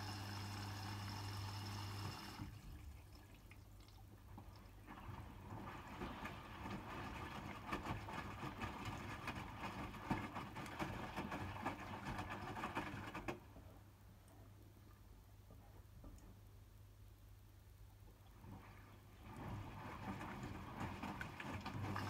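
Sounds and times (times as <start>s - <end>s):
washing machine drum tumbling laundry: 4.8s - 13.6s, 18.4s - 22.0s.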